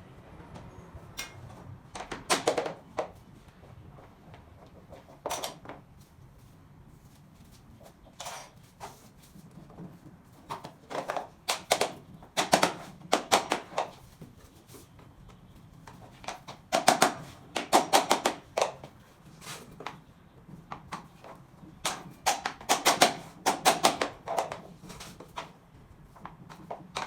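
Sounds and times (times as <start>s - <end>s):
floor planks clicking together: 2.0s - 3.2s, 10.5s - 14.1s, 15.9s - 20.0s, 20.7s - 25.6s.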